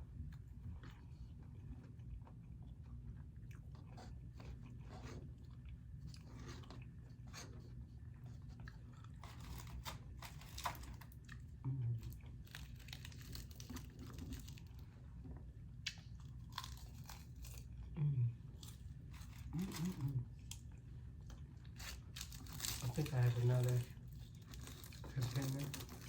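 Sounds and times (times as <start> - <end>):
chewing crisp food: 0.1 - 26.0
low mm hum: 10.9 - 26.0.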